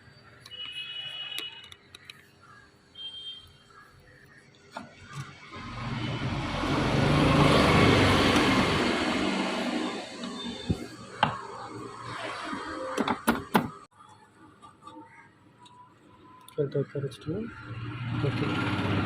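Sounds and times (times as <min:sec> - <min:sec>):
vehicle passing by: 0:05.5 - 0:10.2, 0:17.6 - 0:19.0.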